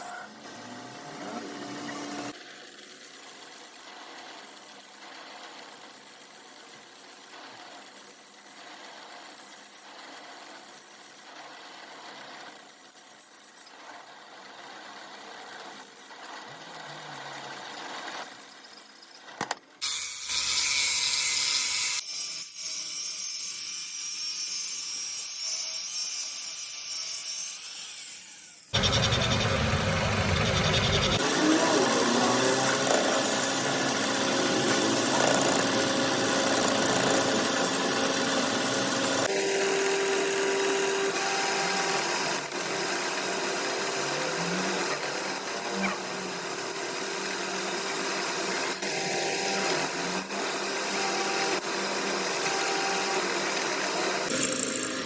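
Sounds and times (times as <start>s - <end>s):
high-pitched machine squeal: 1.1s - 8.6s, 9.2s - 11.3s, 19.8s - 22.1s, 28.8s - 46.4s, 48.6s - 55.0s.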